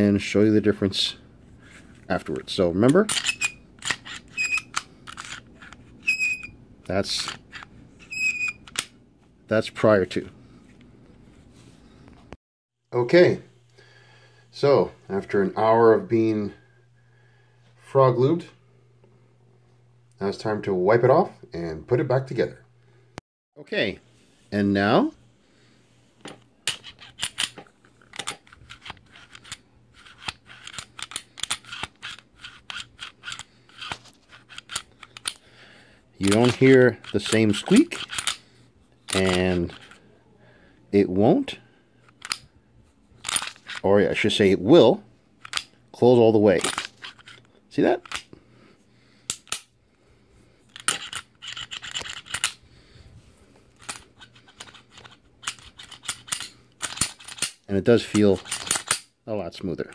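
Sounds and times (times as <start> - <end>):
pistol slide scraping: 3.0 - 8.9, 26.6 - 35.4, 36.2 - 38.5, 39.1 - 40.0, 46.5 - 48.3, 50.7 - 52.6, 53.7 - 59.1
sharp metal clicks: 36.2 - 38.4, 53.8 - 59.1
pistol slide metallic clicks: 49.3 - 49.7, 58.4 - 59.1.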